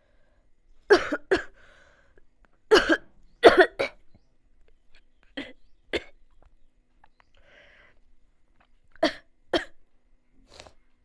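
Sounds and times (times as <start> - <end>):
person coughing: 2.7 - 4.0.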